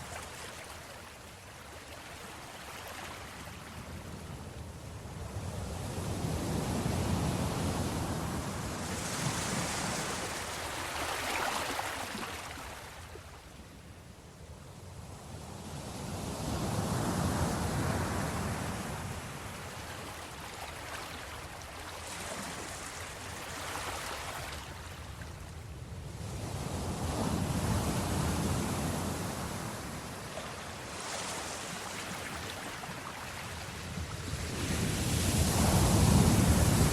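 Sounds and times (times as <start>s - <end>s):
sea waves breaking on shore: 6.2s - 13.5s, 16.9s - 25.6s, 26.4s - 36.9s.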